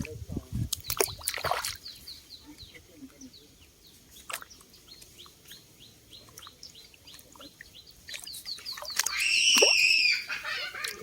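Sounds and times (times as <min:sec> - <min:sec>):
bird chirping: 0:00.7 - 0:11.0
long rising and falling bird call: 0:09.0 - 0:11.0.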